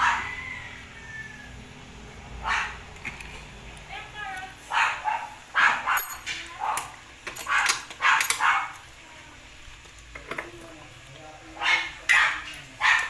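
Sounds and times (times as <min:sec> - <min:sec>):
dog barking: 0:00.0 - 0:00.5, 0:02.4 - 0:02.8, 0:04.6 - 0:06.9, 0:07.5 - 0:08.8, 0:11.6 - 0:13.0.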